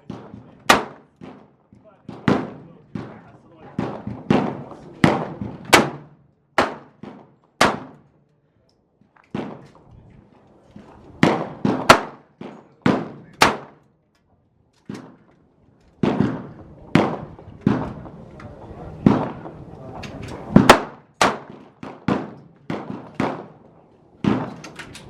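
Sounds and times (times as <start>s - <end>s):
gunshots with echo: 0.0s - 1.5s, 2.1s - 8.0s, 11.2s - 13.8s, 16.0s - 18.1s, 19.0s - 19.6s, 20.5s - 24.6s.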